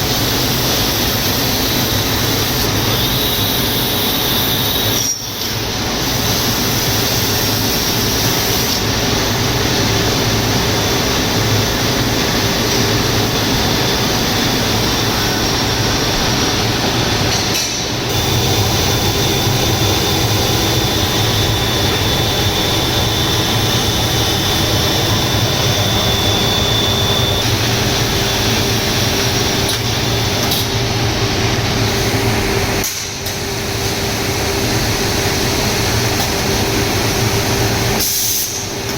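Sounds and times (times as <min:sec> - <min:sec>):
high machine whine: 0:00.0 - 0:38.9.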